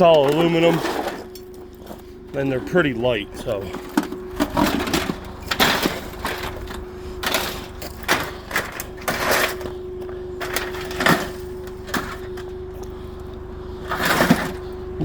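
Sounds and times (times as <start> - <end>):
metal parts clanking and rattling: 0.0 - 2.9, 3.5 - 9.8, 10.4 - 12.5, 13.9 - 14.8
steady hum: 0.0 - 15.0.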